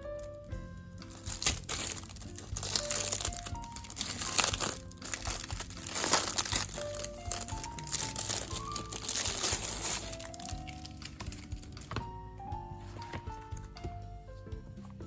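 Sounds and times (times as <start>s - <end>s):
soft background music: 0.0s - 15.0s
packaging crinkling: 1.0s - 12.2s.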